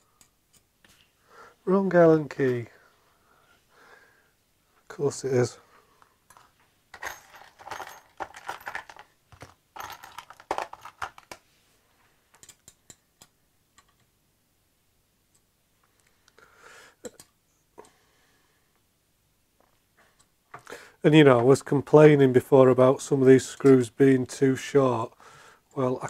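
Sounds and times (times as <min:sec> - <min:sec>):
metal hardware clinking: 0:06.3 - 0:11.4.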